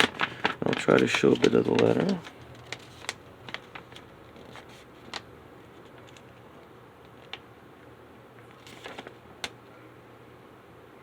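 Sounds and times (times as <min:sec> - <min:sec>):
paper crinkling: 0:00.0 - 0:07.4, 0:08.4 - 0:09.6
faint steady hum: 0:00.0 - 0:11.0.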